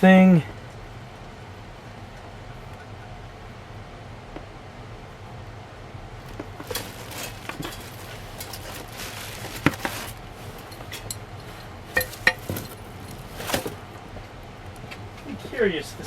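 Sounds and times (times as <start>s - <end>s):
low steady hum: 0.0s - 16.0s
metal parts clinking and knocking: 6.5s - 13.8s.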